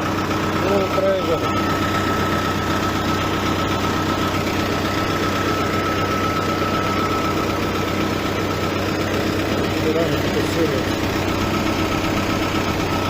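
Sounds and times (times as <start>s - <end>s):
diesel engine idling: 0.0s - 13.0s
high-pitched whine: 0.7s - 10.9s.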